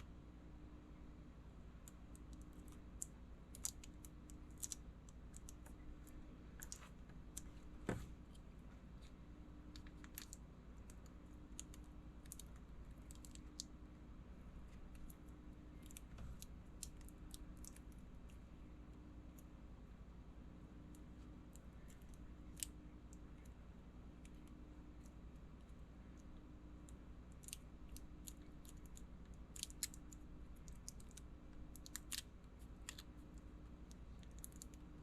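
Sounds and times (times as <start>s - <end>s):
faint pulsing low hum: 0.0s - 35.0s.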